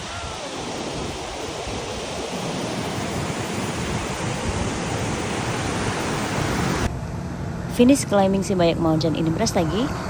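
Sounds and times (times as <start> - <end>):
waterfall roaring: 0.0 - 6.9.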